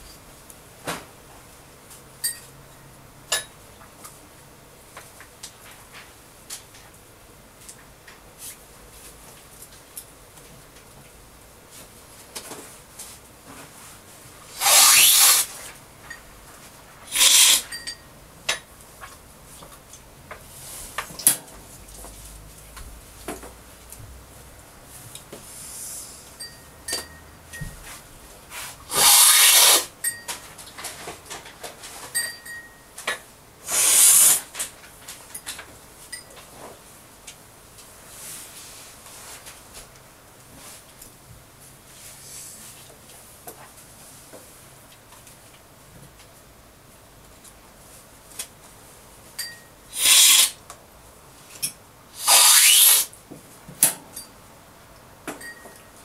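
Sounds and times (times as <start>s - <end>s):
loud coffee slurps: 14.6s - 15.5s, 17.1s - 17.7s, 28.9s - 29.9s, 33.7s - 34.4s, 50.0s - 50.6s, 52.2s - 53.1s.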